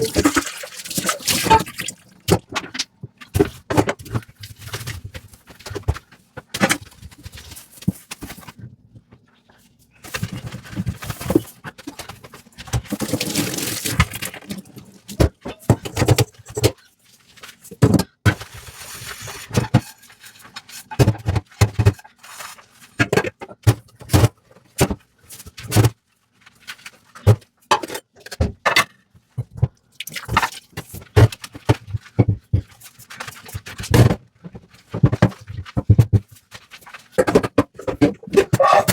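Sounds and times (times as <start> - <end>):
running water splashing: 0.0 - 2.3, 13.0 - 15.0.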